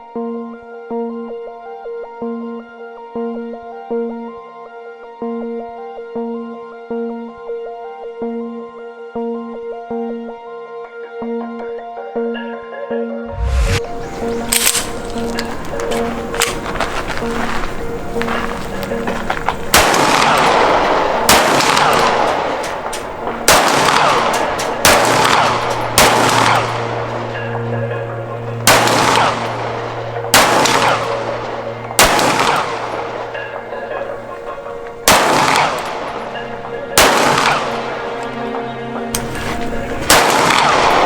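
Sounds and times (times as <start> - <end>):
background music: 0.0 - 41.0
pistol shots with ringing echo: 13.3 - 16.7, 17.4 - 41.0.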